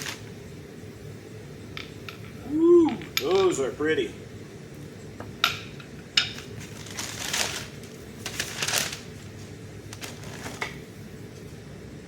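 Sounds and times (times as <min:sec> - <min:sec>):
paper packing material rustling: 0:00.0 - 0:00.2, 0:06.6 - 0:10.8.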